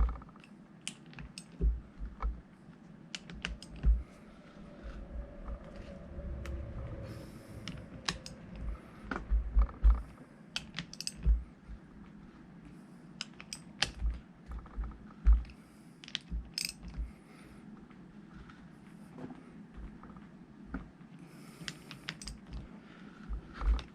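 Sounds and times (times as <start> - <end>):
low handling thumps: 1.6 - 2.4, 7.8 - 10.2
metallic tool clicks and clinks: 10.6 - 11.4, 13.2 - 14.0, 16.2 - 17.0.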